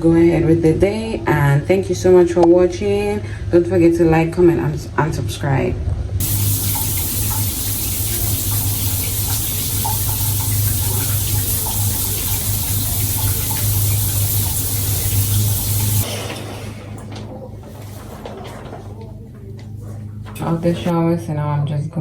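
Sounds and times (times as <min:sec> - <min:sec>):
shower spraying water: 0:06.2 - 0:18.3, 0:20.2 - 0:20.9.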